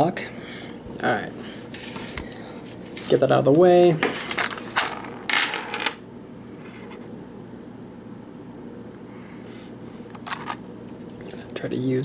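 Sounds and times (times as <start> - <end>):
low background hum: 0.0 - 12.0.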